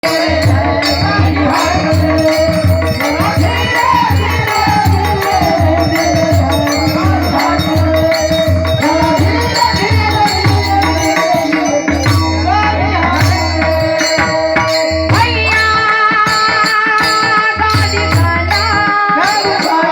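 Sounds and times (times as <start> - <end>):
hand drum beat: 0.0 - 19.9
small cymbals jingling: 0.0 - 19.9.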